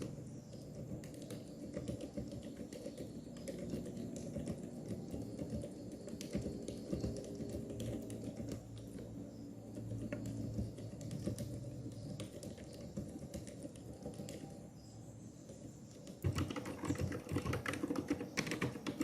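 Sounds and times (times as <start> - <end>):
fast mechanical keyboard typing: 0.0 - 19.0.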